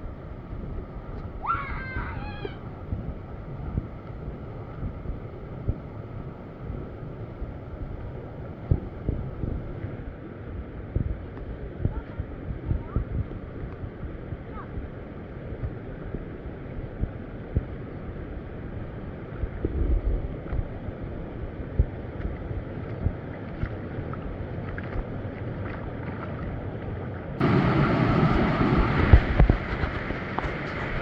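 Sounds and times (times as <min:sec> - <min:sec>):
wind buffeting microphone: 0:00.0 - 0:26.6, 0:27.4 - 0:31.0
stream water splashing: 0:22.1 - 0:31.0.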